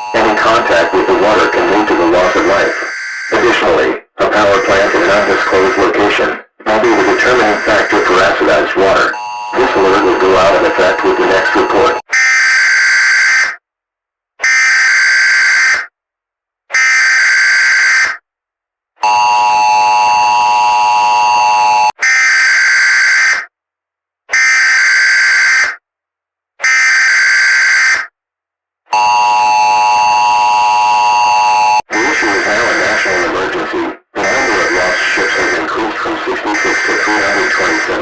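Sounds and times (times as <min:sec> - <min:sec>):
two-tone attention signal: 0:00.0 - 0:03.6, 0:06.8 - 0:08.4, 0:09.1 - 0:12.0
buzzing data bursts: 0:06.8 - 0:08.4, 0:34.2 - 0:38.0.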